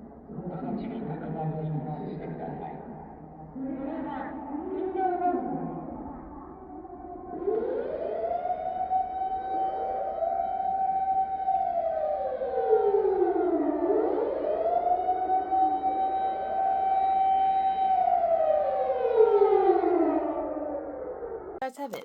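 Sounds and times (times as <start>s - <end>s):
echoing siren wail: 6.7s - 21.6s
warning siren wailing: 7.2s - 21.4s.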